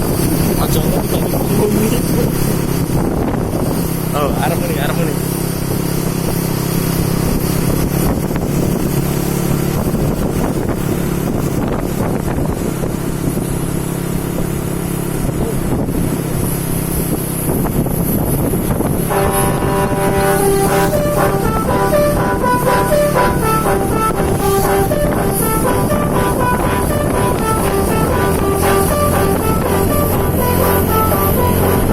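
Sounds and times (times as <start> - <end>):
bus engine running: 0.0 - 31.9
wind on microphone: 0.0 - 31.9
multi-tone bus horn: 18.8 - 31.9.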